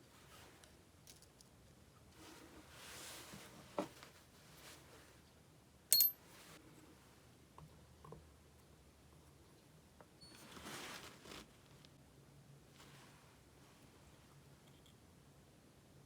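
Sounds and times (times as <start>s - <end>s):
sharp metallic clink: 5.9s - 6.2s.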